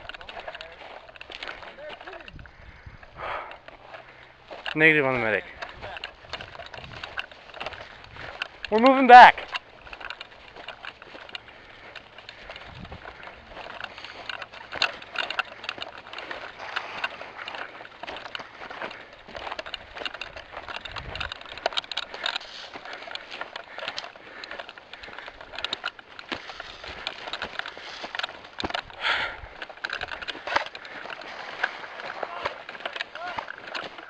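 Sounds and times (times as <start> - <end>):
footsteps through dry twigs: 0.0 - 34.0.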